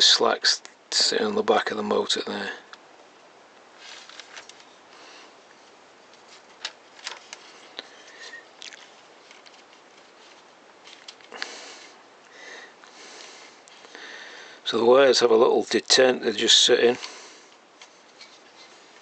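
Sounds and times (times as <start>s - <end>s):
wires and plastic parts clicking: 6.1s - 11.5s, 17.0s - 19.0s.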